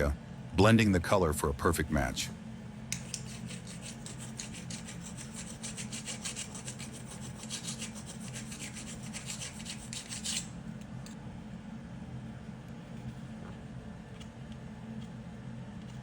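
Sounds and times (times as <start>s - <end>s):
hand scraping on tile: 3.0s - 10.5s.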